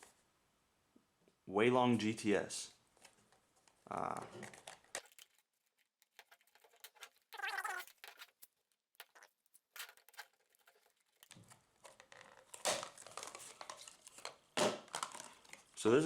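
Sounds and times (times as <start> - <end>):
packaging rustling and clicking: 3.0 - 15.8.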